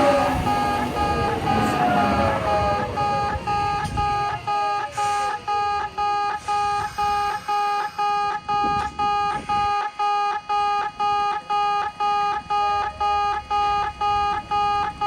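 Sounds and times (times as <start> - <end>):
train rumbling past: 0.0 - 7.5
level crossing warning bell: 0.0 - 15.0.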